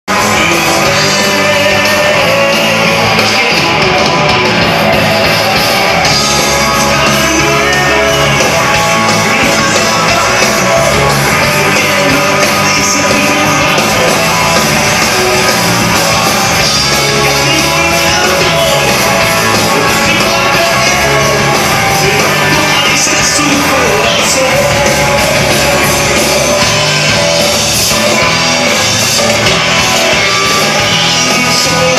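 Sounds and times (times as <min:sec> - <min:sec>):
person singing: 0:00.1 - 0:31.9
rock band playing live: 0:00.1 - 0:31.9.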